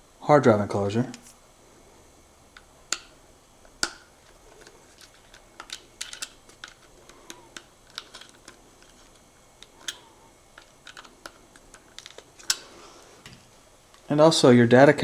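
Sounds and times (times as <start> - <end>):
small metal parts clicking: 3.8 - 12.7.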